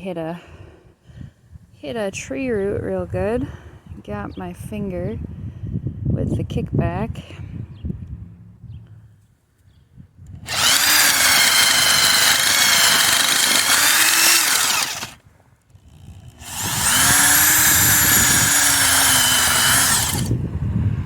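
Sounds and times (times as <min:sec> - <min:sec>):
power drill boring into soil: 0:10.5 - 0:15.2, 0:15.9 - 0:20.4.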